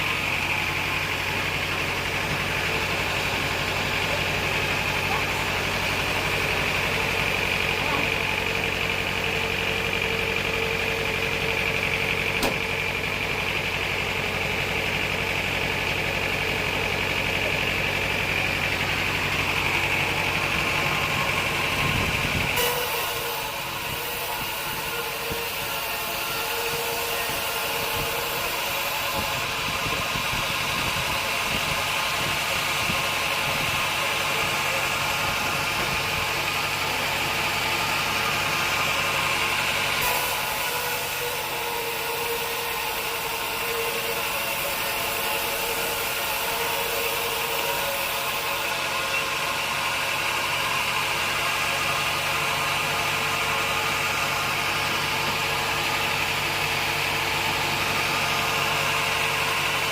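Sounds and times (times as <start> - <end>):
sawmill machinery humming: 0.0 - 59.9.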